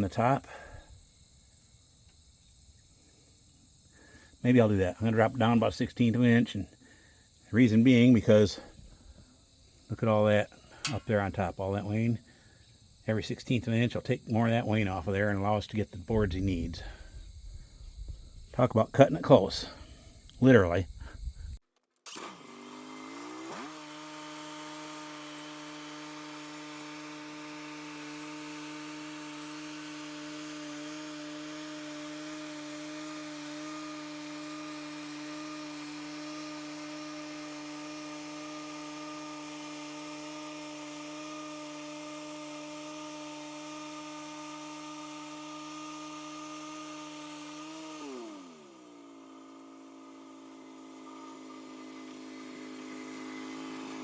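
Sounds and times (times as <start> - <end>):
sawmill engine revving: 9.9 - 12.1, 22.1 - 54.0.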